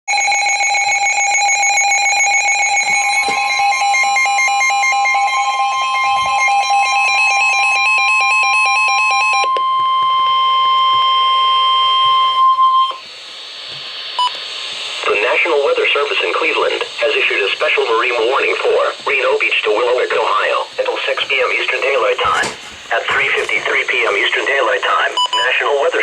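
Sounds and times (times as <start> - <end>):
warbling electronic alarm: 0.1 - 13.1.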